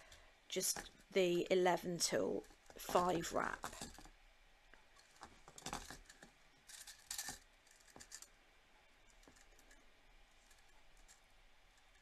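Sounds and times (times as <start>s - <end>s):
wire wrapping clicks and scratching: 2.3s - 12.0s.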